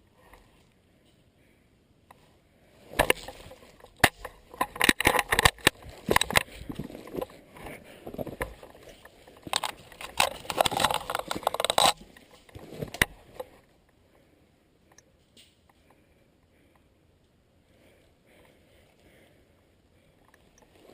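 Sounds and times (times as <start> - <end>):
handling noise at microphone: 2.2 - 13.7.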